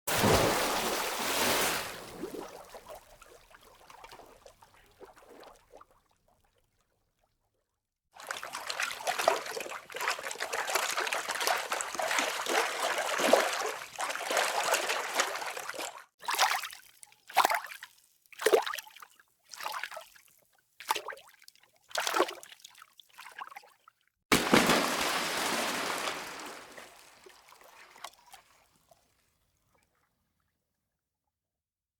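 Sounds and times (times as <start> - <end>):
water sloshing: 0.1 - 2.9, 8.2 - 16.7, 24.3 - 28.6
water splashing: 0.1 - 3.2, 8.2 - 16.7, 24.3 - 28.6.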